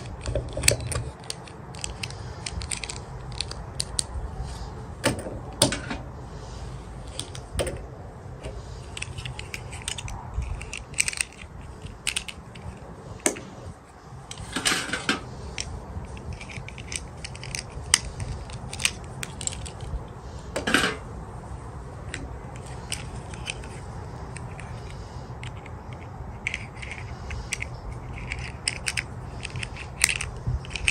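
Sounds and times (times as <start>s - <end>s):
plastic toy pieces clicking: 0.0s - 4.2s, 8.4s - 13.5s, 14.3s - 20.0s, 22.1s - 30.9s.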